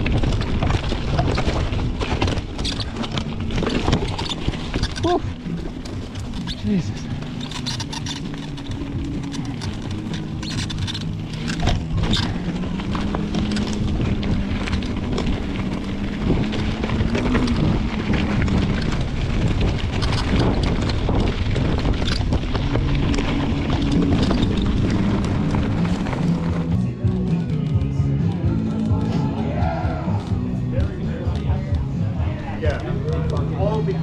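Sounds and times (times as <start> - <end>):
wind buffeting microphone: 0.0 - 7.2, 9.9 - 26.6
bike clicks and rattles: 0.0 - 29.4, 30.2 - 34.0
tyre noise on dirt: 0.0 - 34.0.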